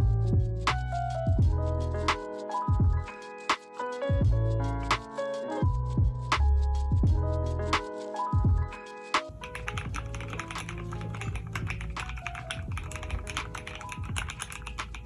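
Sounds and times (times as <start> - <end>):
background music: 0.1 - 15.0
fast typing on mechanical keyboard: 9.3 - 15.0.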